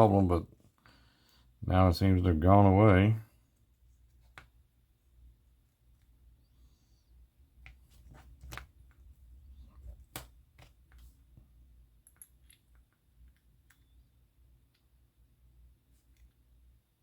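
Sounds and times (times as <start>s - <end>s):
faint low hum: 0.0s - 17.0s
small parts clicking and tapping: 11.9s - 15.0s.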